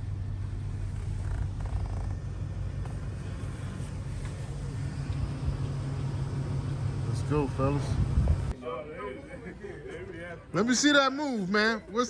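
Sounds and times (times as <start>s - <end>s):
car engine rumble: 0.0s - 8.6s
road noise: 0.0s - 8.6s.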